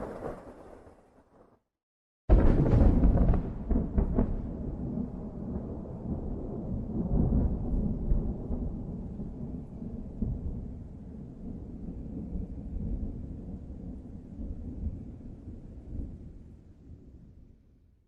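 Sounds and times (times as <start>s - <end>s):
thunder clap: 0.0s - 1.5s, 2.3s - 10.8s
thunder rumbling: 0.0s - 1.5s, 2.3s - 16.3s.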